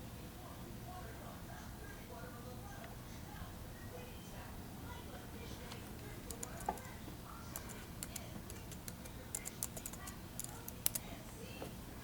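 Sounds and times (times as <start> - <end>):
laptop keys clicking: 6.3 - 6.9, 7.6 - 11.0.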